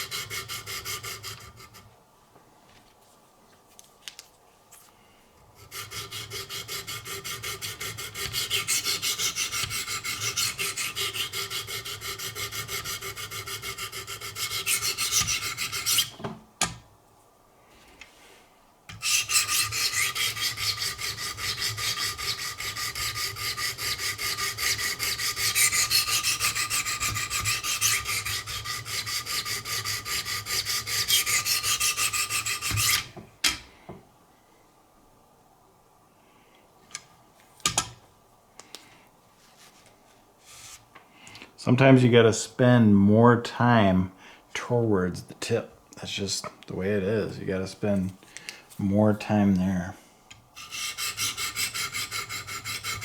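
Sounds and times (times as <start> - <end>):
sharpening stones rasping on knife: 18.9 - 33.1, 50.6 - 53.0.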